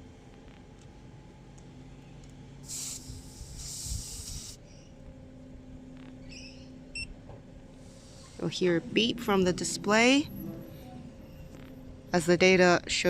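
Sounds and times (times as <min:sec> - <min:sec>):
air hissing from tire valve: 0:02.6 - 0:04.7, 0:07.8 - 0:08.6.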